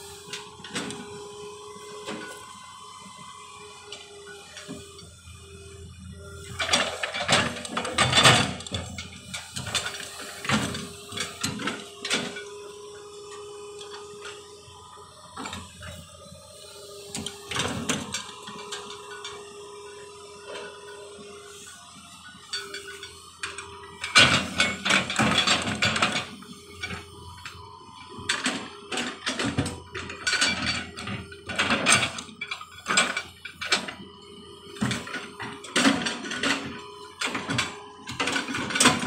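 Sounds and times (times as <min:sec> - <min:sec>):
excavator whine: 0:00.0 - 0:39.0
clanking and scraping: 0:06.4 - 0:12.5, 0:16.8 - 0:19.4, 0:22.4 - 0:39.0.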